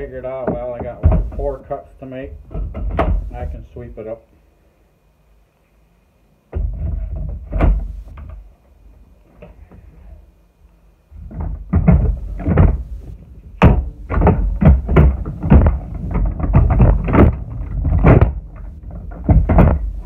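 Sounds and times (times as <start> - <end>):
knocks and thumps of handling: 0.3 - 1.7, 2.3 - 3.5, 6.5 - 8.5, 11.1 - 20.0.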